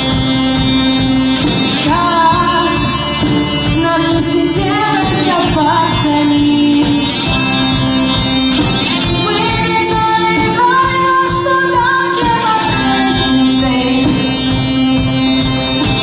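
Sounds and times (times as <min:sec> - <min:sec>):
held accompanying notes: 0:00.0 - 0:16.0.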